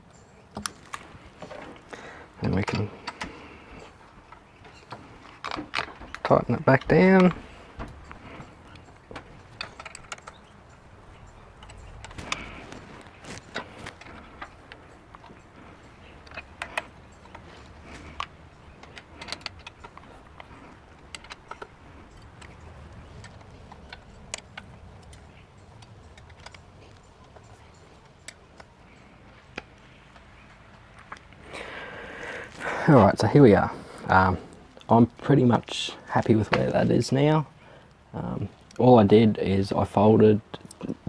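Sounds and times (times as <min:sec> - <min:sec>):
hand tools clicking on bolts: 0:11.5 - 0:30.8.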